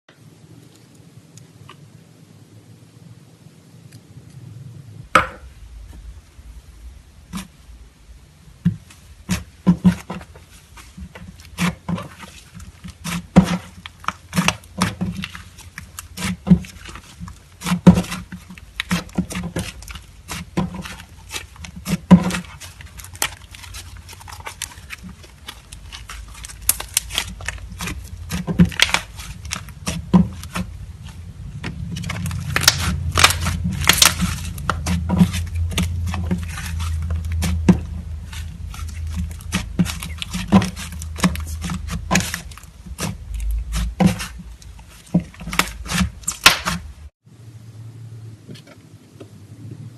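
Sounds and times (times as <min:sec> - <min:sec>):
slime squishing by hand: 0:08.6 - 0:47.1.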